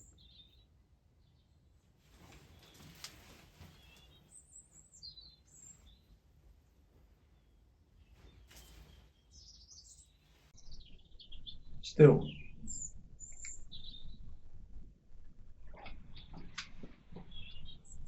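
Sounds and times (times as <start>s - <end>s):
faint birdsong chirps: 0.0s - 18.0s
faint rustles: 1.9s - 4.9s, 5.5s - 11.6s.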